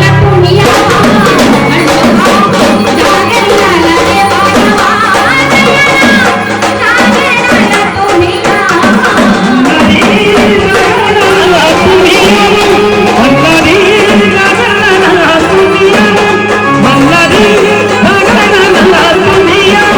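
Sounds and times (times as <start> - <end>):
drums beaten fast: 0.0 - 19.9
organ melody: 9.4 - 19.9.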